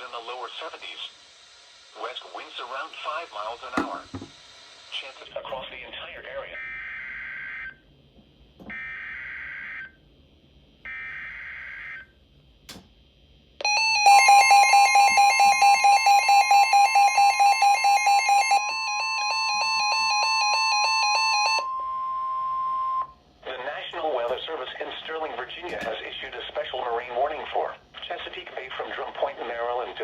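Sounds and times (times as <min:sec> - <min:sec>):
click: 0:12.6 - 0:12.9
loud steady alert tone: 0:13.6 - 0:23.1
pulsing tone: 0:13.6 - 0:23.1.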